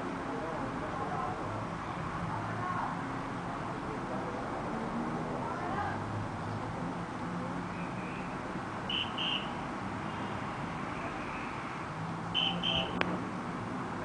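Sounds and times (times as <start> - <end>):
short high beeps: 12.4 - 13.0.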